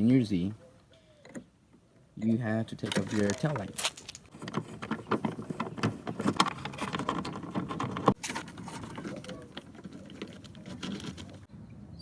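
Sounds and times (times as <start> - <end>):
tools and plastic parts clicking: 2.8 - 11.5.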